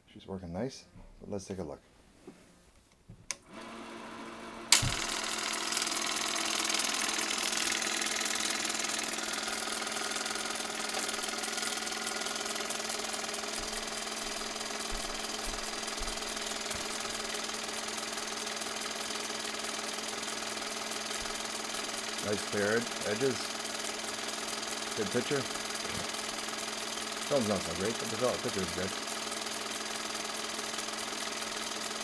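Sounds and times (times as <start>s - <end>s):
projector motor and fan whirring: 3.0s - 32.0s
film transport clatter: 4.7s - 13.6s, 20.0s - 30.2s.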